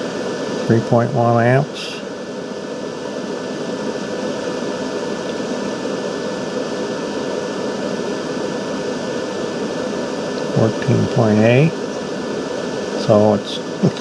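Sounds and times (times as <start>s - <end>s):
faint high steady tone: 0.0s - 2.0s, 10.3s - 14.0s
electric fan whirring: 0.0s - 14.0s.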